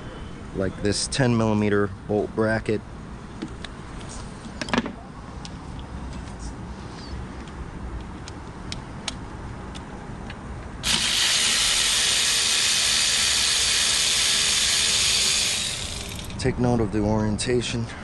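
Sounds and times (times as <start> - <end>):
loud steady hiss: 10.8 - 16.4.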